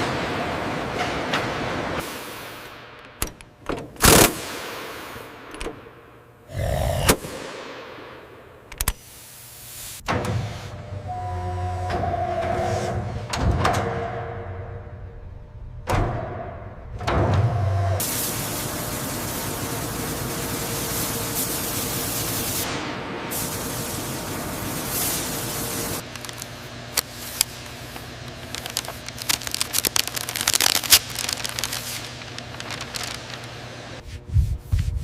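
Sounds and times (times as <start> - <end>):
compressed air hissing: 18.0 - 26.0.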